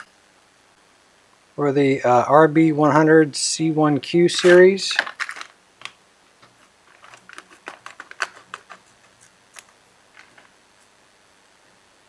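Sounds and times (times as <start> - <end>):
small parts clicking and tapping: 4.9 - 10.5.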